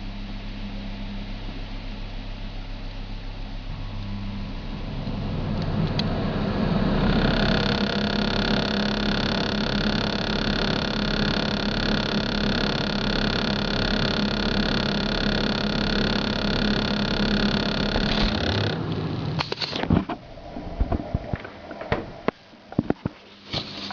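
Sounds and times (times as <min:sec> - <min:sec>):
refrigerator humming: 0:00.0 - 0:23.9
high-pitched whining tones: 0:03.8 - 0:19.8.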